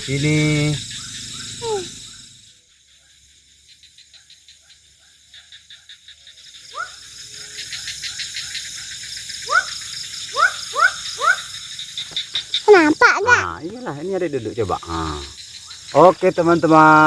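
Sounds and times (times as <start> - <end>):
high insect hum: 0.0 - 17.0
rapid clicking calls: 3.8 - 16.8.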